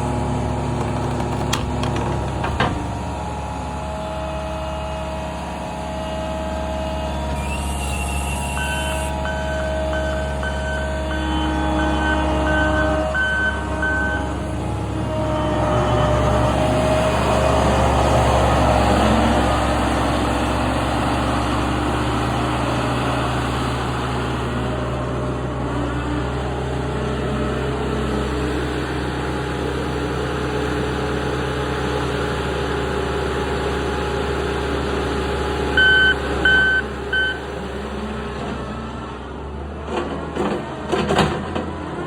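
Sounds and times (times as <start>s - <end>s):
diesel engine running: 0.0s - 42.0s
backup alarm beeps: 7.6s - 14.4s, 35.8s - 37.5s.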